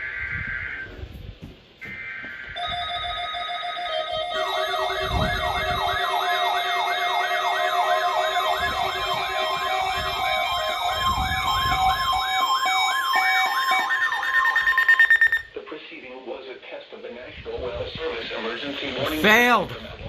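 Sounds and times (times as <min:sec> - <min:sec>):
electronic siren sweeping: 0:01.8 - 0:15.5
steady alert tones: 0:02.6 - 0:15.5.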